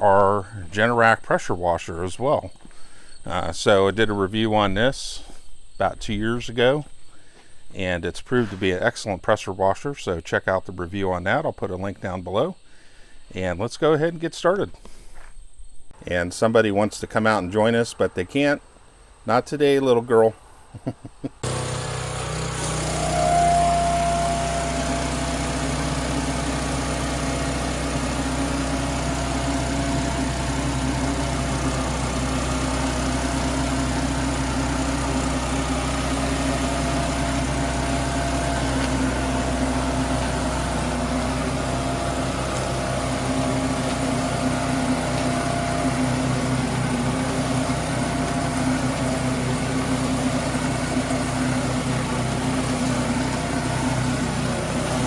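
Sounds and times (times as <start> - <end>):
pressure washer engine running: 21.4 - 55.0.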